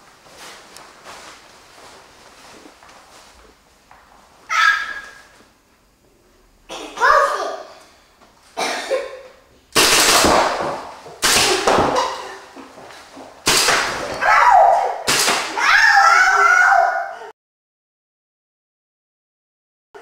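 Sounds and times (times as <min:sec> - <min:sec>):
paintball marker shots: 0:13.5 - 0:14.0.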